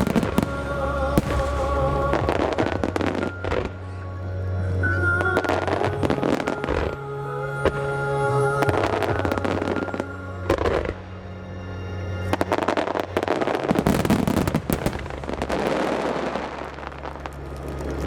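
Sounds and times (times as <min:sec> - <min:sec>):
fireworks bursting and crackling: 0:00.0 - 0:03.8, 0:12.4 - 0:18.0
music with sustained low notes: 0:00.0 - 0:18.0.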